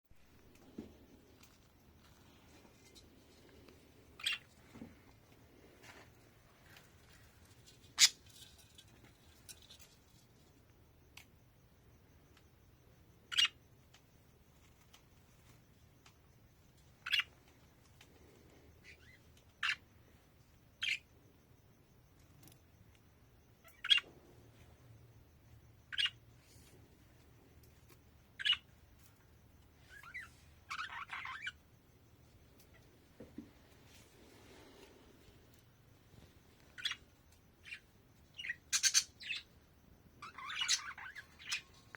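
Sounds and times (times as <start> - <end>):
budgerigar chirping: 4.2 - 4.4, 13.3 - 13.6, 17.0 - 17.3, 23.6 - 24.0, 25.9 - 26.2, 28.4 - 28.7, 36.8 - 37.0, 38.4 - 39.5, 40.2 - 41.6.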